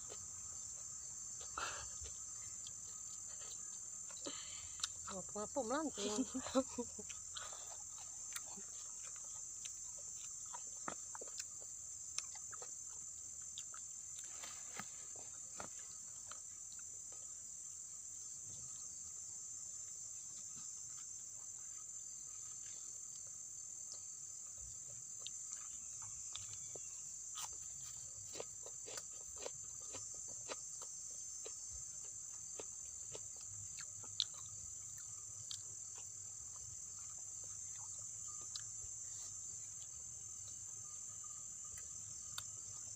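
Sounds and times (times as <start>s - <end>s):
high-pitched insect chorus: 0.0s - 42.9s.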